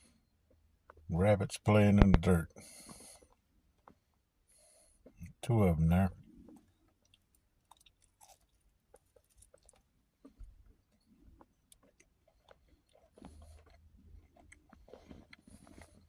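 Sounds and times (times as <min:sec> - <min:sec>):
chewing: 0:06.2 - 0:16.0.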